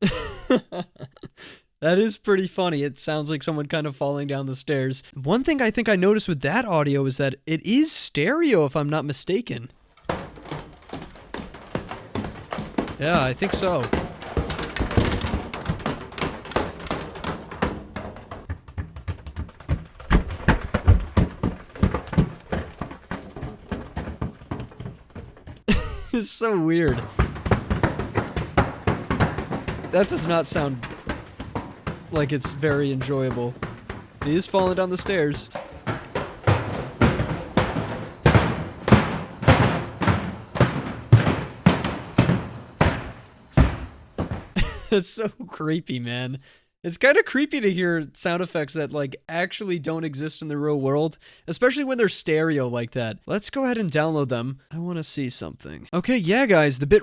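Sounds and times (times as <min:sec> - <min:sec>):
body tumbling down stairs: 0:09.7 - 0:45.0
heavy thuds and knocks: 0:09.8 - 0:45.0.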